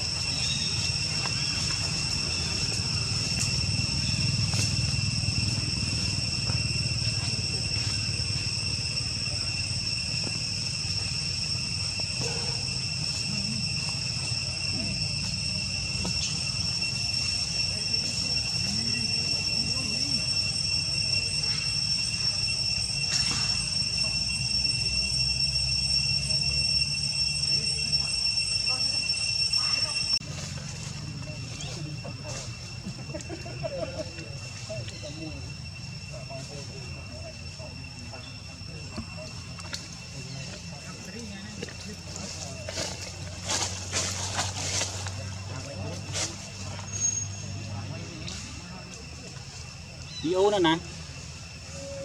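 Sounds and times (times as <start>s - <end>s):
insect chorus: 0.0s - 52.0s.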